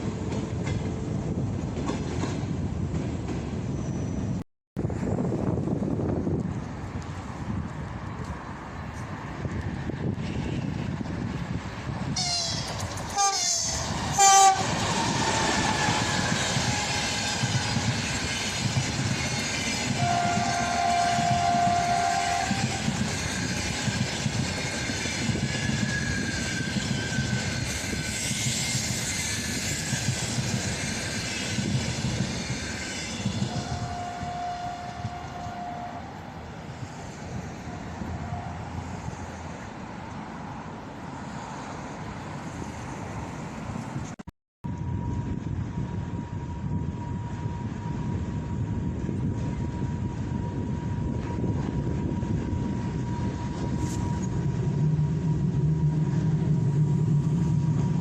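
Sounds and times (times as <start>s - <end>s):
train rumble and wheel clatter: 0.0s - 58.0s
locomotive horn: 12.2s - 14.8s, 19.9s - 23.0s, 33.4s - 36.3s, 37.6s - 38.9s.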